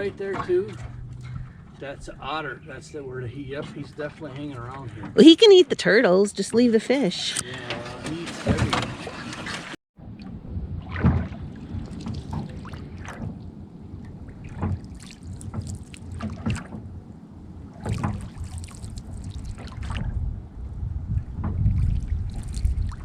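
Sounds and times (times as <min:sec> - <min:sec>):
boat knocking: 0:00.0 - 0:07.1, 0:07.7 - 0:22.0
water splashing: 0:08.0 - 0:20.4, 0:21.1 - 0:23.0
wind rumble on microphone: 0:10.0 - 0:23.0.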